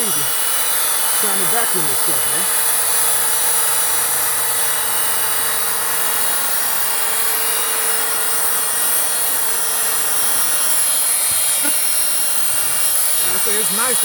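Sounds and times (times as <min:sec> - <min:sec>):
electric drill motor whining: 0:00.0 - 0:14.0.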